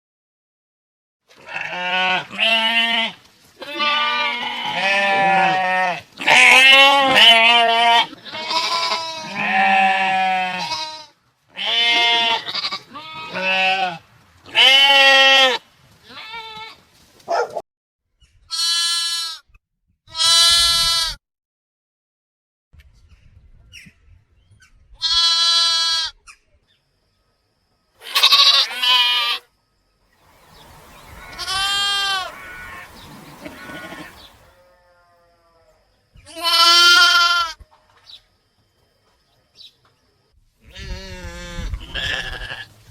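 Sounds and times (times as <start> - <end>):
sheep bleating: 1.4 - 16.8, 18.5 - 19.5, 20.1 - 21.2, 25.0 - 26.2, 28.0 - 29.4, 31.0 - 35.6, 36.3 - 37.6, 40.6 - 42.7.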